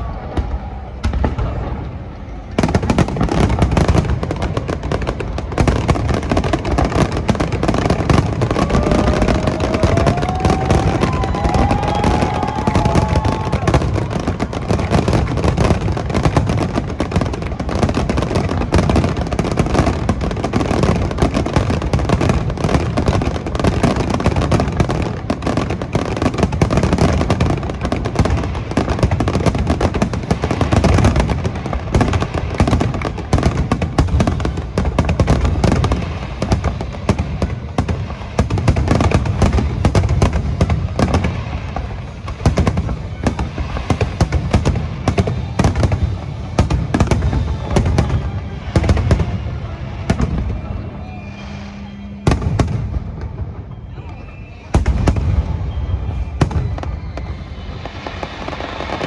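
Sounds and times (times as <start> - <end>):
fireworks booming and crackling: 0.0 - 59.0
faint rising whistle: 43.1 - 59.0.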